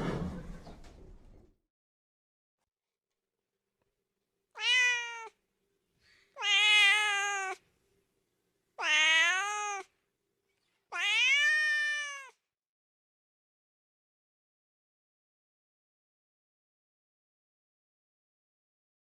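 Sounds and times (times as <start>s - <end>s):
cat meowing: 4.6s - 5.4s, 6.4s - 7.6s, 8.8s - 10.0s, 10.9s - 12.5s.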